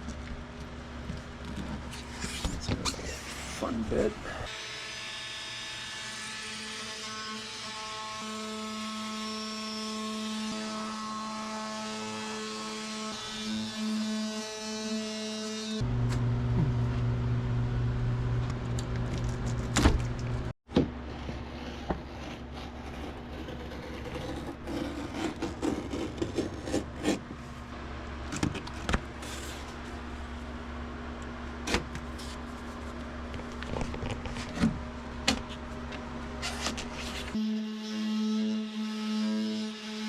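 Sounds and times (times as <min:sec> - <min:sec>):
machine hum: 0:15.8 - 0:37.6.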